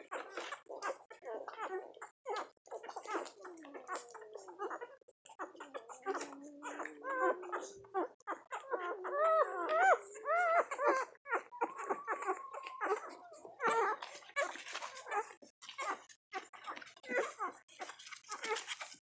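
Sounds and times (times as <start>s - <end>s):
puppy whine: 0.0s - 18.9s
puppies whimpering and squeaking: 0.0s - 19.0s.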